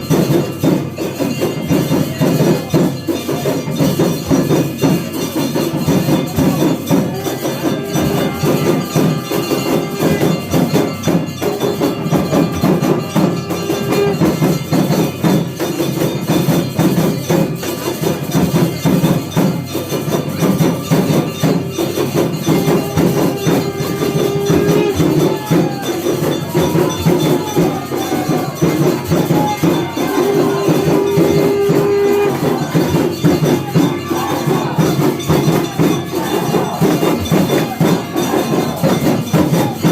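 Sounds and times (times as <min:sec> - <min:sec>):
drums struck rapidly: 0:00.0 - 0:39.9
hand cymbals: 0:00.0 - 0:39.9
temple bells clanging: 0:00.0 - 0:39.9
held tone: 0:20.8 - 0:39.9.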